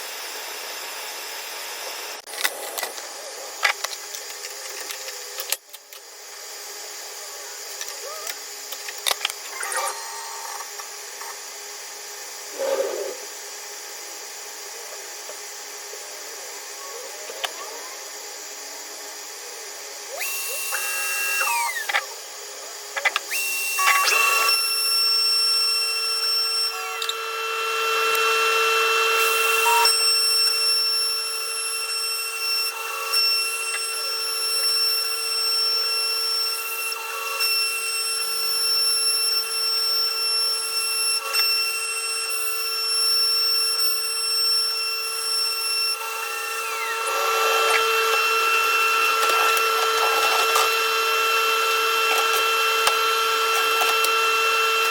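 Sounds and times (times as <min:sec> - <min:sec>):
router spindle whine: 0:00.0 - 0:54.9
rasping cutting noise: 0:12.5 - 0:13.4, 0:46.0 - 0:54.9.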